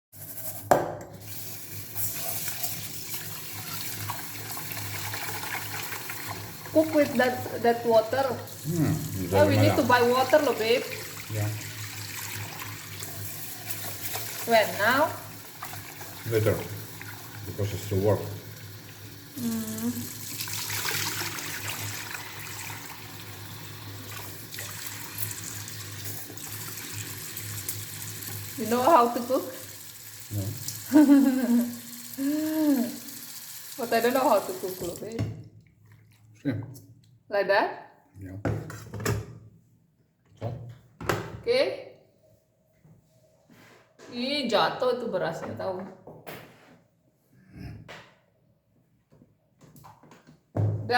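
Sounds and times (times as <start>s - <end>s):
kitchen tap running into sink: 0.2s - 35.5s.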